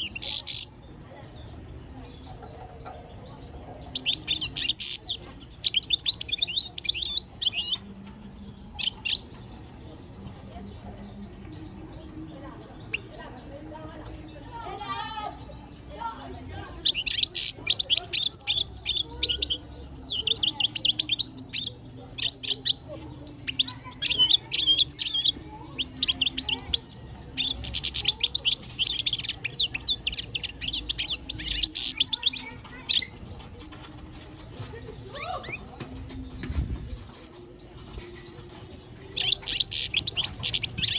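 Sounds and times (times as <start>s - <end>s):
goldfinch twittering song: 0.0s - 0.7s, 1.3s - 7.8s, 8.5s - 9.4s, 16.8s - 33.3s, 39.1s - 40.9s.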